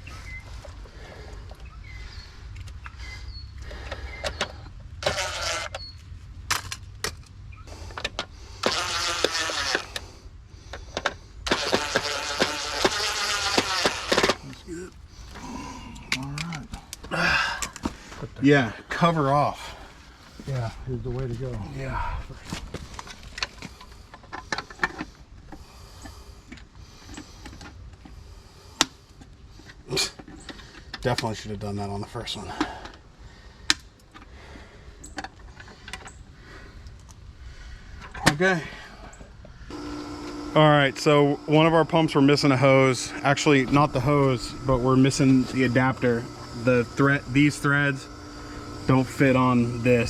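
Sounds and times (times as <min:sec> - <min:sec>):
cordless drill driving screws: 0:04.3 - 0:05.9, 0:08.6 - 0:10.1, 0:11.0 - 0:14.6, 0:39.7 - 0:50.0.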